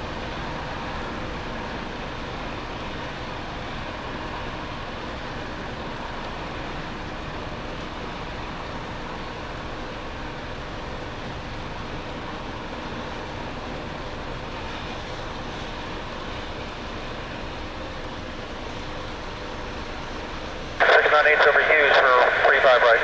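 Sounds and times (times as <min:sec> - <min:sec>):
jet engine rushing: 0:20.8 - 0:23.0.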